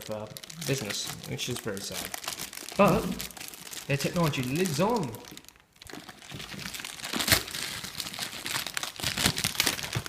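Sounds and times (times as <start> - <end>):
packaging crinkling and rustling: 0.0 - 10.0.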